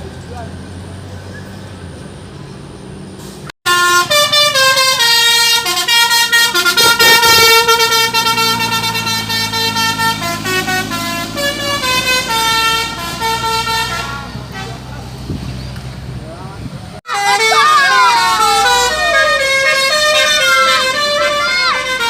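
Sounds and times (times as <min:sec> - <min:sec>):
multi-tone bus horn tune: 0:03.6 - 0:15.0, 0:17.0 - 0:22.0.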